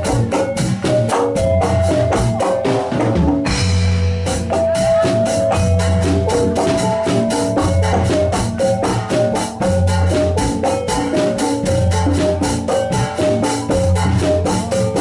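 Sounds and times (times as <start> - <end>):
drum beat: 0.0 - 15.0
metallophones ringing: 0.0 - 15.0.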